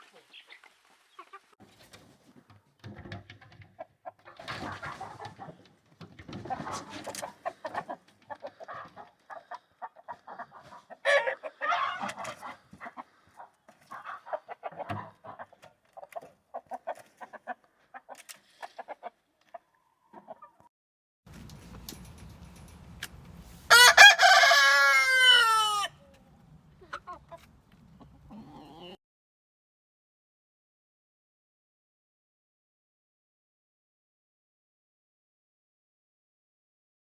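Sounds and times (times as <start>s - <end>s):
chickens clucking: 0.0s - 20.7s, 21.3s - 29.0s.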